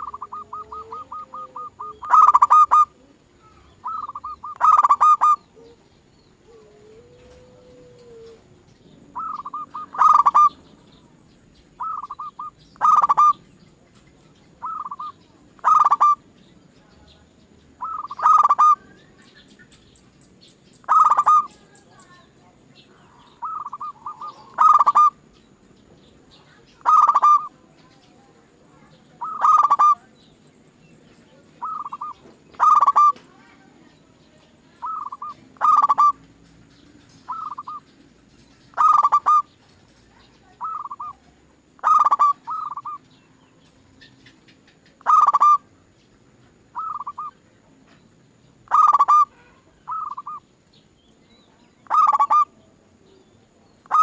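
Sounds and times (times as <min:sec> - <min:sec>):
doves cooing: 0:00.0 - 0:16.3, 0:17.8 - 0:19.4, 0:20.8 - 0:22.1, 0:23.0 - 0:25.3, 0:26.8 - 0:28.2, 0:29.1 - 0:30.4, 0:31.4 - 0:33.4, 0:34.8 - 0:45.8, 0:46.7 - 0:47.4, 0:48.6 - 0:50.4, 0:51.8 - 0:52.6.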